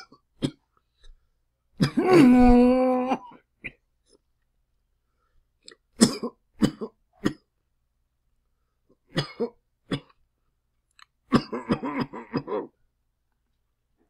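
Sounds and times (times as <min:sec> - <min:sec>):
person coughing: 0:01.8 - 0:03.8, 0:06.0 - 0:07.5, 0:11.3 - 0:12.8.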